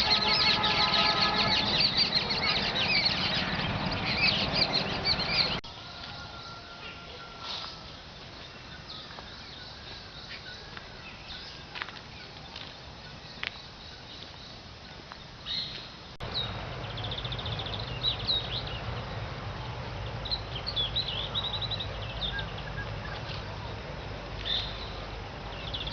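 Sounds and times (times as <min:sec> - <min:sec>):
bird trills: 0:00.0 - 0:05.6
birds chirping and calling: 0:00.0 - 0:19.2, 0:20.0 - 0:23.8, 0:24.4 - 0:25.9.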